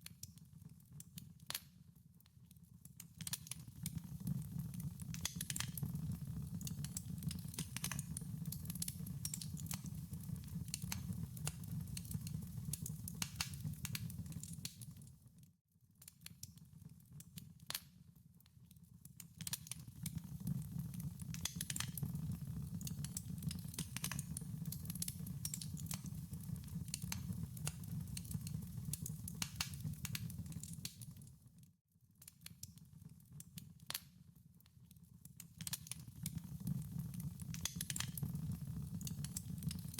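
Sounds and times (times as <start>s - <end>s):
wood fire crackling: 3.2s - 15.1s, 19.4s - 31.3s, 35.6s - 39.9s.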